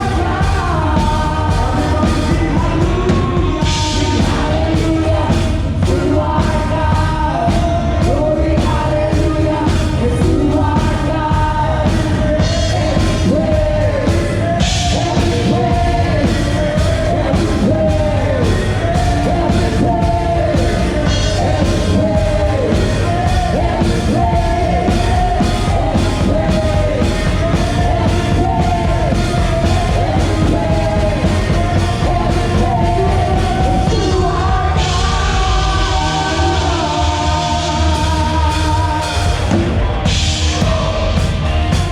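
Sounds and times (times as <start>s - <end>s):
drums keeping a steady beat: 0.0s - 41.9s
loud group singing: 0.0s - 41.9s.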